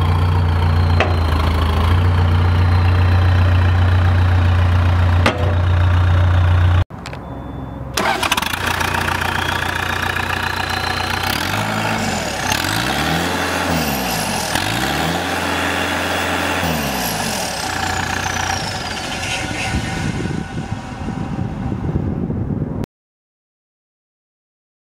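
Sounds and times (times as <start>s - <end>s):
diesel engine running and revving: 0.0s - 22.7s.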